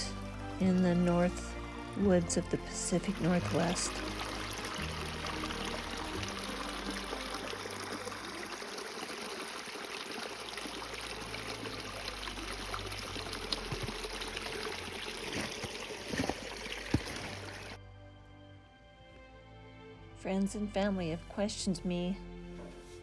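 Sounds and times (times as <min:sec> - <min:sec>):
running water: 0:00.0 - 0:17.8
soft background music: 0:00.0 - 0:23.0.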